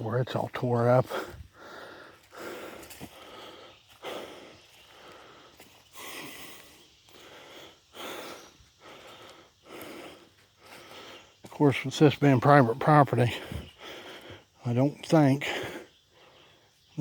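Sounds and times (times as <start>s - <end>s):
man breathing: 1.0s - 11.5s, 13.2s - 14.6s, 15.4s - 16.9s.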